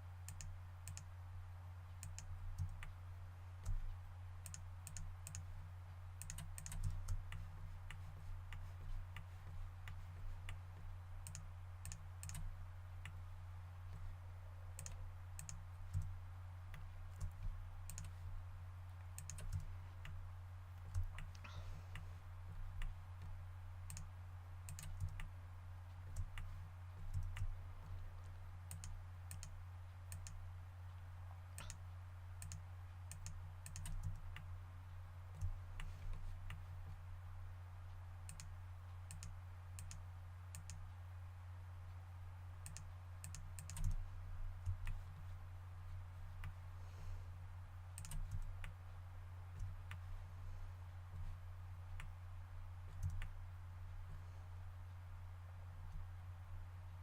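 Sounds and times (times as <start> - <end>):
low electrical hum: 0.0 - 57.0
mouse and keyboard clicks: 0.3 - 1.1, 4.4 - 5.5, 6.2 - 13.2, 14.8 - 16.1, 16.7 - 18.2, 19.1 - 20.2, 20.8 - 22.1, 24.7 - 25.3, 31.6 - 31.8, 42.6 - 44.0, 48.0 - 48.8.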